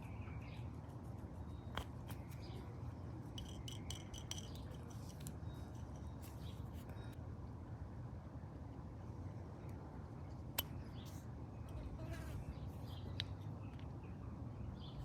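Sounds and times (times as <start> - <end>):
small parts clicking and scraping: 3.3 - 7.0.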